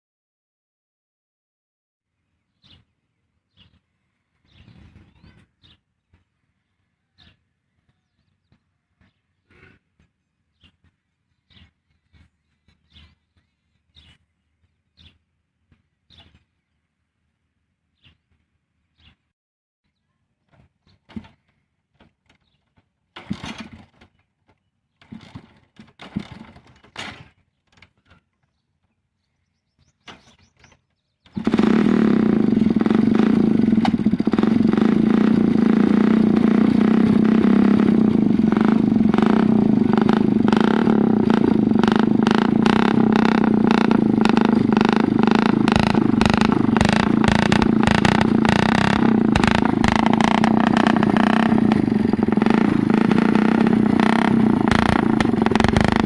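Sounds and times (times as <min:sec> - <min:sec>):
motorcycle engine running: 0:31.3 - 0:56.0.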